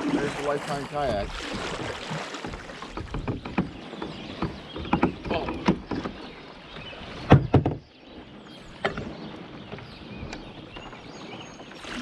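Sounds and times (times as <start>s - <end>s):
creek flowing: 0.0s - 3.2s, 11.7s - 12.0s.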